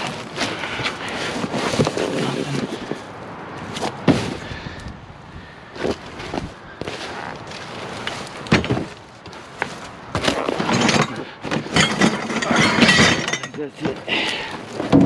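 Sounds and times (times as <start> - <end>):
scrap metal and wire rustling: 0.0 - 4.6, 5.8 - 15.0
metal knocks and clanks: 10.1 - 14.1.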